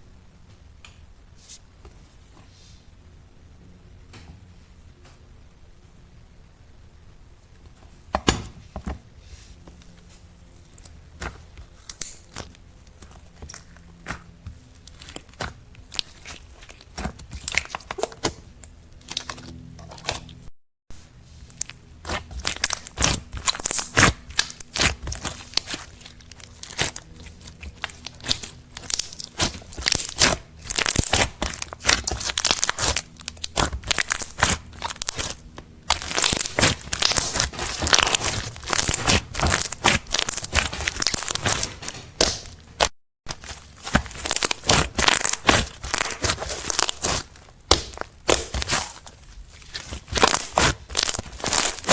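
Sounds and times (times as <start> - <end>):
slime squished by hand: 10.7 - 20.4, 21.4 - 51.9.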